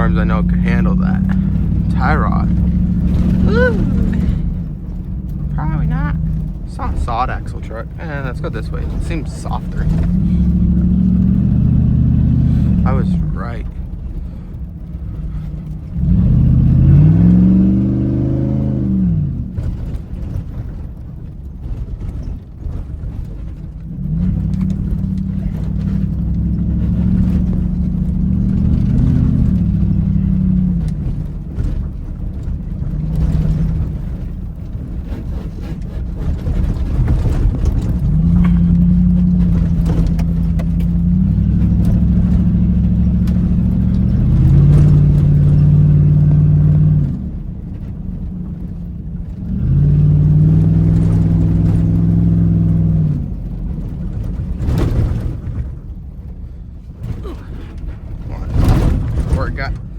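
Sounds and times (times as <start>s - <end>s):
truck engine revving: 0.0s - 59.9s
knocks and rattles: 19.3s - 59.9s.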